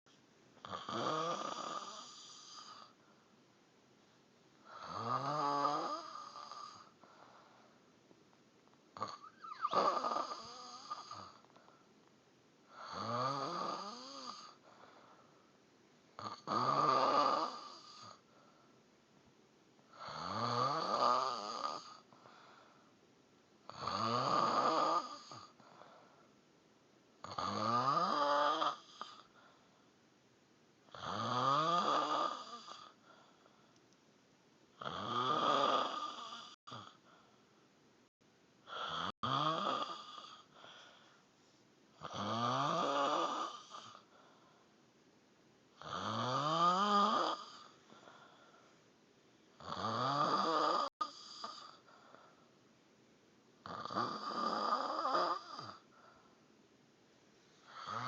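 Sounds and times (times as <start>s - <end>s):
quiet breaths: 0.1s - 30.2s, 30.8s - 58.0s
person snoring: 0.6s - 3.0s, 4.6s - 7.3s, 9.0s - 11.5s, 12.7s - 14.8s, 16.2s - 18.2s, 19.9s - 22.4s, 23.7s - 25.9s, 27.2s - 29.4s, 30.9s - 33.0s, 34.8s - 37.1s, 38.7s - 41.0s, 42.0s - 44.1s, 45.8s - 48.4s, 49.6s - 51.9s, 53.6s - 55.9s, 57.6s - 58.0s.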